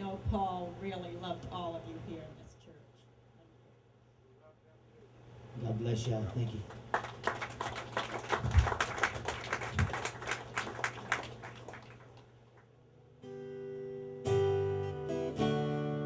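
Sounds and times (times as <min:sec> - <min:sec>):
applause: 0:06.5 - 0:12.7
strummed acoustic guitar chords: 0:13.2 - 0:16.0.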